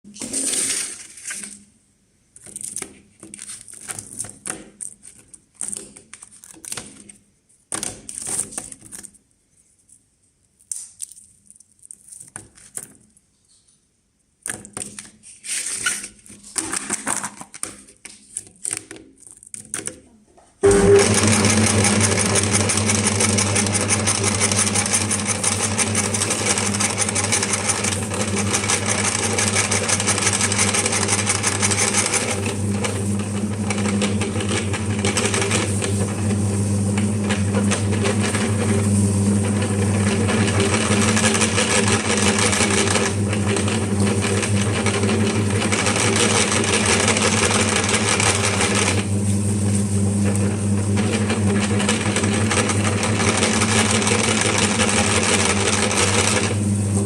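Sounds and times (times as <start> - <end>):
meat grinder motor humming: 20.6 - 57.0.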